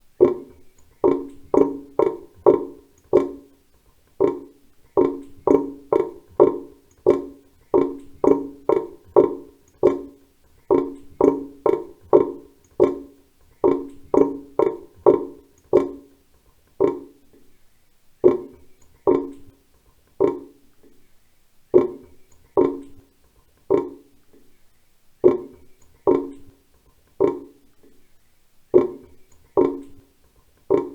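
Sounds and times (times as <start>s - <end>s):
water drops plopping in sink drain: 0.2s - 3.6s, 4.2s - 16.2s, 16.8s - 17.5s, 18.2s - 19.6s, 20.2s - 20.6s, 21.8s - 23.1s, 23.7s - 24.5s, 25.2s - 26.6s, 27.2s - 27.6s, 28.8s - 30.9s.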